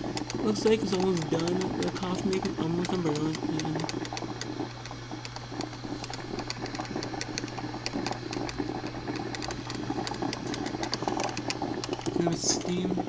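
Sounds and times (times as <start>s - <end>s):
coffee maker gurgling and sputtering: 0.0s - 13.0s
crackling pops: 0.0s - 13.0s
steady low hum: 0.0s - 13.0s.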